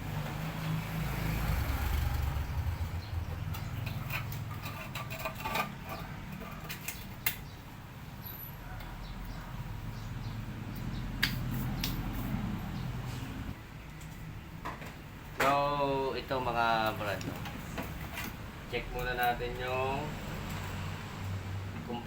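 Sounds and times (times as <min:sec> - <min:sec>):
tools clicking and knocking: 0:03.3 - 0:07.5.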